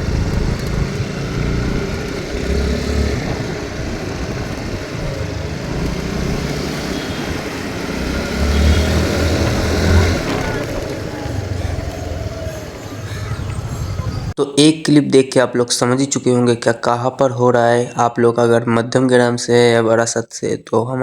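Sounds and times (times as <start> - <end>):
motorcycle engine running: 0.0 - 14.4.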